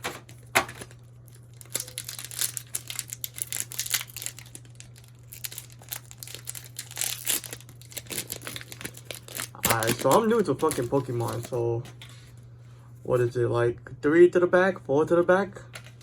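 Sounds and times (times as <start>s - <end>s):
foil wrapper crinkling and tearing: 0.0s - 11.6s.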